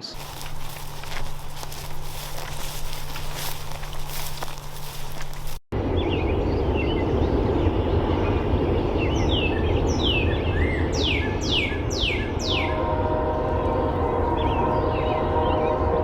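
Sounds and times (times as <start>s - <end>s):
footsteps rustling: 0.0s - 5.7s
outdoor noise haze: 0.0s - 14.4s.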